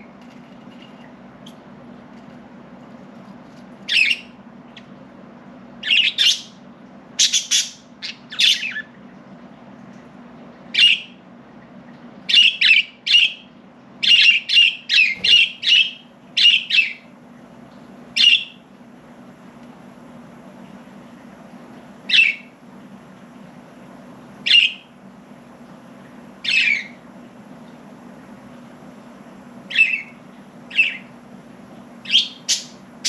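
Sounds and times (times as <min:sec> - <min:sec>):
budgerigars chirping and squawking: 0:03.9 - 0:04.3, 0:05.8 - 0:06.5, 0:07.2 - 0:08.9, 0:14.0 - 0:17.0, 0:18.2 - 0:18.6, 0:22.1 - 0:22.4, 0:26.4 - 0:26.9, 0:29.7 - 0:30.1, 0:30.7 - 0:31.1, 0:32.0 - 0:32.8.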